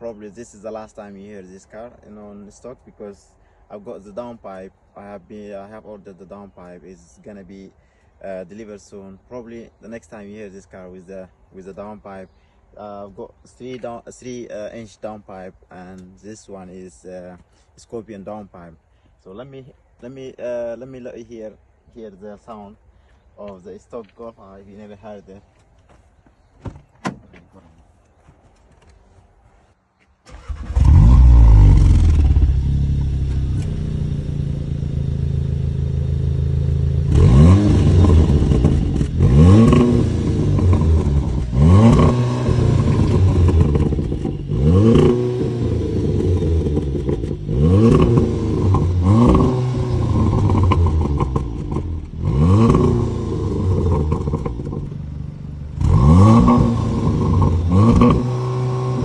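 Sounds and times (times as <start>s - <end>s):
car engine starting and revving: 30.3s - 59.0s.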